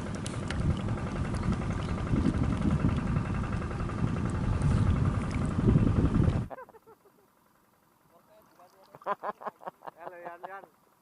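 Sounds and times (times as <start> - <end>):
rumbling wind noise: 0.0 - 6.5
small motor engine running: 0.0 - 11.0.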